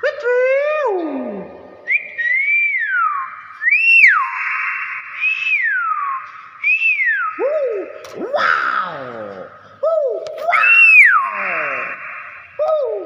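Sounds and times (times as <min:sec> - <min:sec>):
myna whistling: 0:01.9 - 0:08.1, 0:10.5 - 0:13.0.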